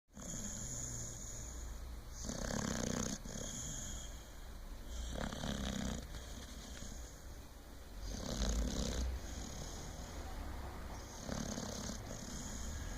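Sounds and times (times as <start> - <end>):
person snoring: 0.2 - 1.5, 2.2 - 4.2, 4.9 - 7.0, 8.0 - 10.3, 11.2 - 12.9
quiet breathing: 0.2 - 12.9.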